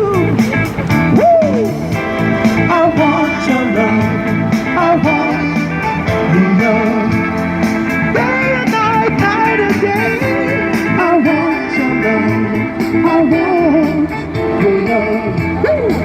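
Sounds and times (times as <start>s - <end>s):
band playing a song: 0.0s - 16.0s
lead singer singing: 0.0s - 16.0s.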